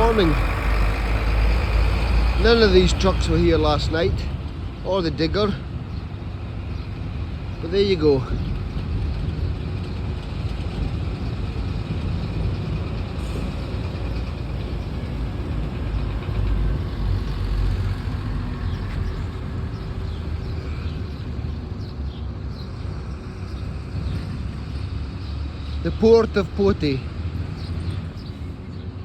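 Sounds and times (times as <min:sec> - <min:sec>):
digger engine running: 0:00.0 - 0:05.7, 0:07.6 - 0:21.8
heavy trucks rumbling: 0:00.0 - 0:29.0.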